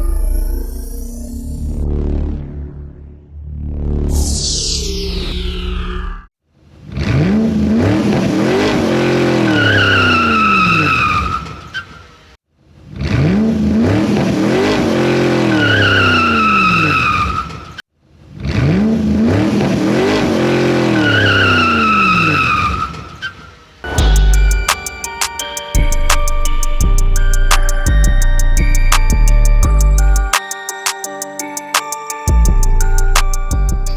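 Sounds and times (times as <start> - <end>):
car engine revving: 7.1 - 10.9, 13.1 - 17.0, 18.6 - 22.5
tyres squealing in a skid: 7.1 - 12.2, 13.0 - 17.8, 18.5 - 23.6.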